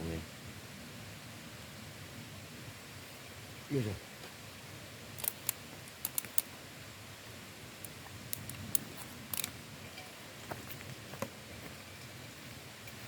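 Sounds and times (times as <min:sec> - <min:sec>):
campfire crackling: 0:03.7 - 0:13.0.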